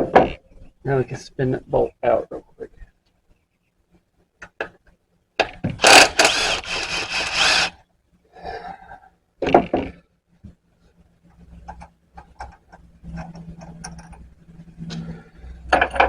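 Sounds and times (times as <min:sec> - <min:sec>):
power drill spinning a bolt: 0:05.8 - 0:07.8.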